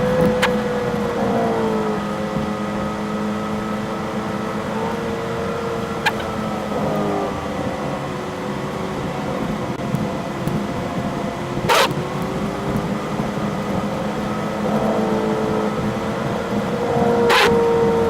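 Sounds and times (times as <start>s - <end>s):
car engine cruising: 0.0s - 18.0s.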